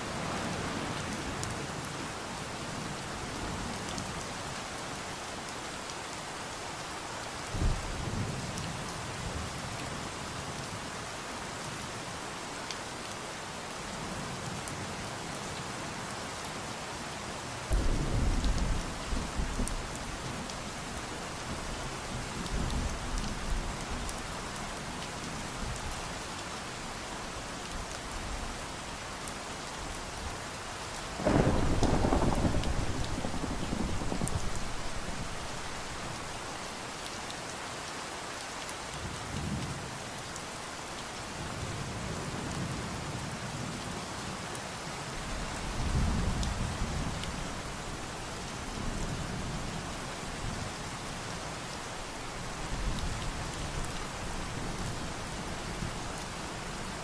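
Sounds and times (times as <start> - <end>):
steady rain falling: 0.0 - 57.0
thunder rumbling: 31.2 - 36.4.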